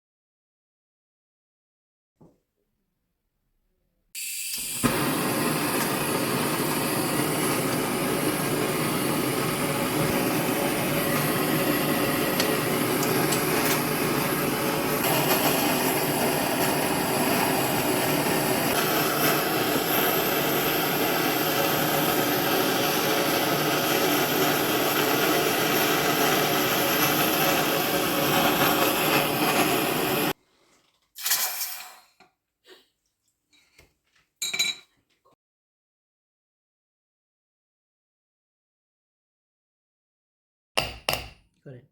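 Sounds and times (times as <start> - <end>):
gas torch hissing: 4.2 - 30.4, 31.2 - 32.1.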